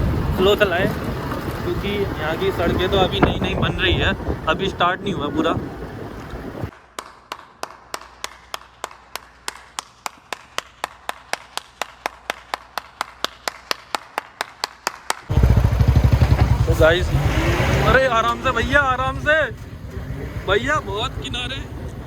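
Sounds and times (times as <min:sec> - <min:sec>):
loud engine: 0:15.3 - 0:22.0.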